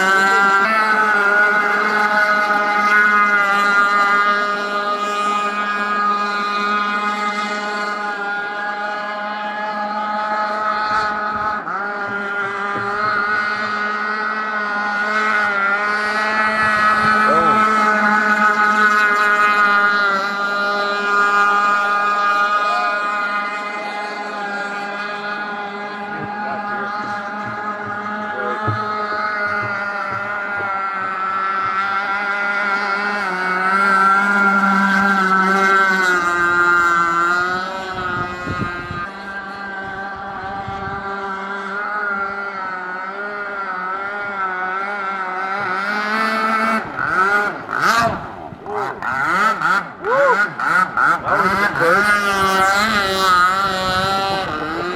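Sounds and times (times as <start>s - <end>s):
two-stroke boat engine running: 0.0s - 54.9s.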